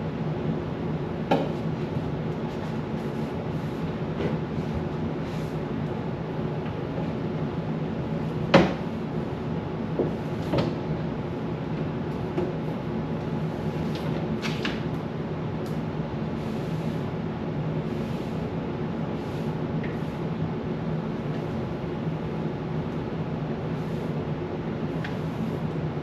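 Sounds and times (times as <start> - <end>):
steady background hum: 0.0 - 26.0
knocks and clunks of fridge parts: 1.2 - 1.6, 8.4 - 8.9.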